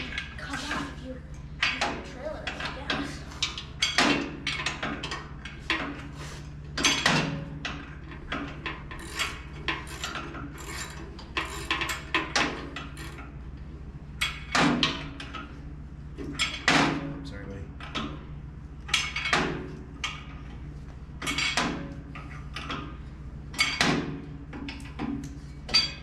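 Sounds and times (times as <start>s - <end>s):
steady low hum: 0.0s - 26.0s
metal clanks and knocks: 1.6s - 6.1s, 6.8s - 13.4s, 18.8s - 20.6s, 21.2s - 26.0s
ratcheting clicks of hand tools: 6.8s - 13.3s.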